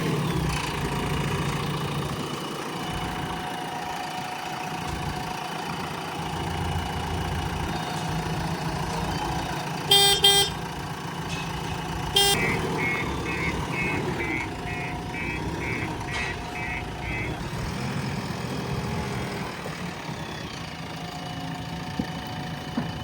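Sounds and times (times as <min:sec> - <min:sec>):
backhoe engine running: 0:00.0 - 0:23.0
reversing alarm beeping: 0:09.9 - 0:10.6, 0:12.2 - 0:17.6
vehicle horn tooting: 0:09.9 - 0:10.6, 0:12.1 - 0:17.4.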